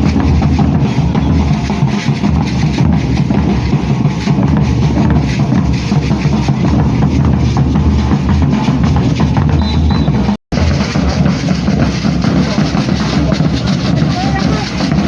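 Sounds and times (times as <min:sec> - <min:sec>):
deep bass drums: 0:00.0 - 0:15.0
drum ensemble playing: 0:00.0 - 0:15.0
snare drums: 0:00.0 - 0:15.0.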